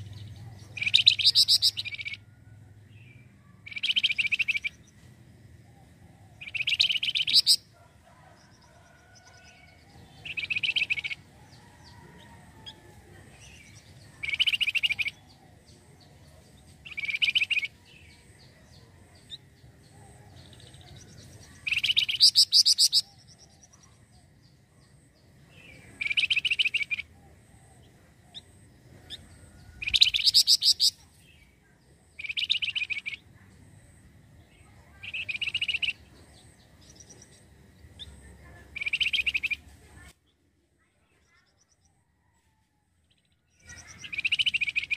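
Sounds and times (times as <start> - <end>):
songbird singing trilled phrases: 0.0 - 7.8, 8.4 - 12.0, 12.6 - 40.5, 43.0 - 44.9.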